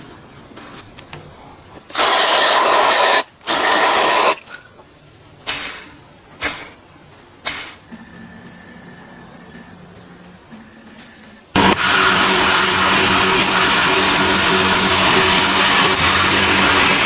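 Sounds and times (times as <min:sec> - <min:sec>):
hissing spray bursts: 0:01.9 - 0:04.4, 0:05.4 - 0:06.8, 0:07.4 - 0:07.9, 0:11.6 - 0:17.0.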